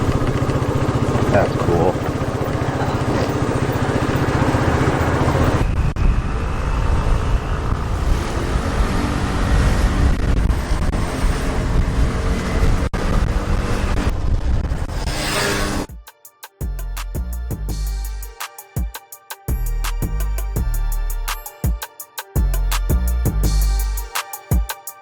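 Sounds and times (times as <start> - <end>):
motor scooter engine running: 0.0 - 14.3
road noise: 0.0 - 15.9.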